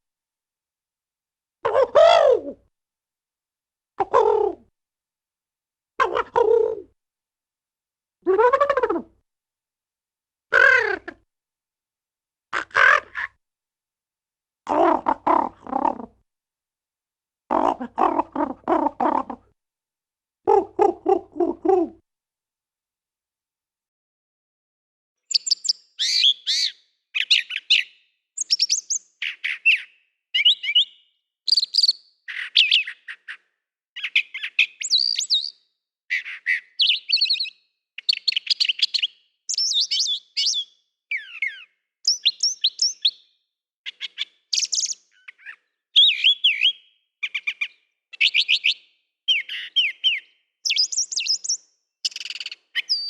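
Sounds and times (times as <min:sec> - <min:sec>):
songbird chirping and singing: 0:25.3 - 0:53.0.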